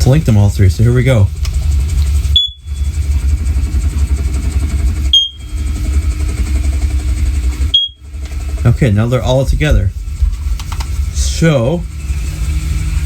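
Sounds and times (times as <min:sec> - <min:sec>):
steady low rumble: 0:00.0 - 0:13.0
smoke alarm chirps: 0:02.2 - 0:03.1, 0:05.0 - 0:06.0, 0:07.6 - 0:08.1.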